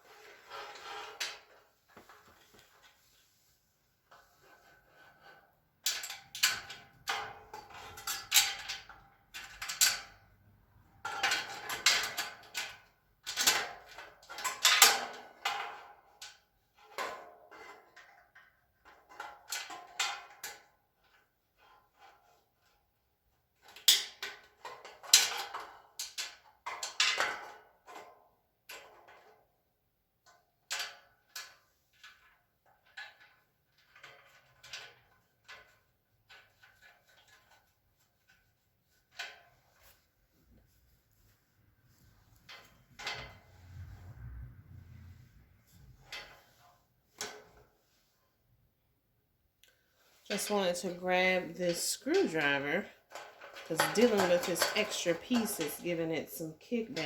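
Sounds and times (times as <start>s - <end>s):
metal brackets and screws clinking: 50.3s - 57.0s.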